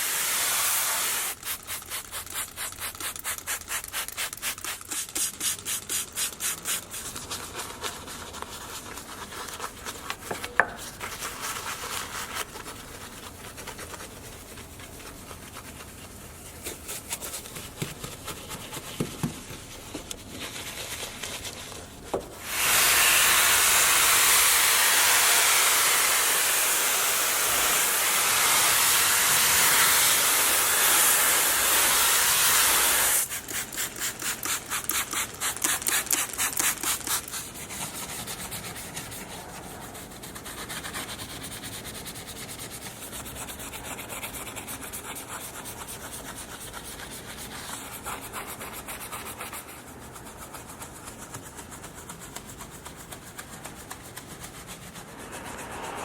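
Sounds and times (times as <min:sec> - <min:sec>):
loud steady hiss: 0:00.0 - 0:01.4, 0:22.4 - 0:33.3.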